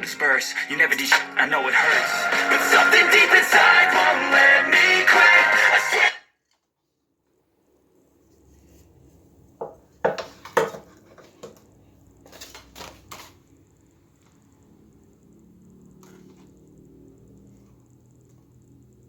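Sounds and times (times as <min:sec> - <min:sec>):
rap music: 0:00.0 - 0:06.2.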